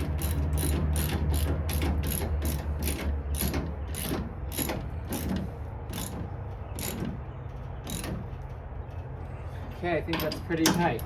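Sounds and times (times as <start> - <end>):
ratchet wrench clicking: 0.0 - 6.2.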